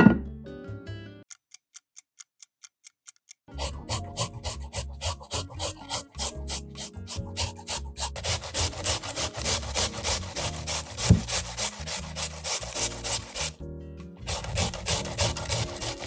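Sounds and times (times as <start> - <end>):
food grated on hand grater: 3.5 - 13.6, 14.2 - 16.0.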